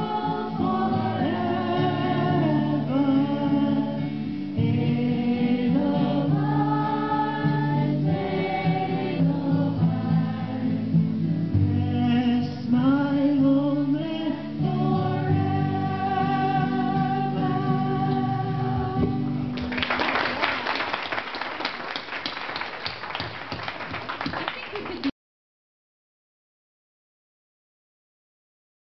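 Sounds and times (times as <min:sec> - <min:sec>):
group of people singing: 0:00.0 - 0:19.5
applause: 0:19.5 - 0:25.1.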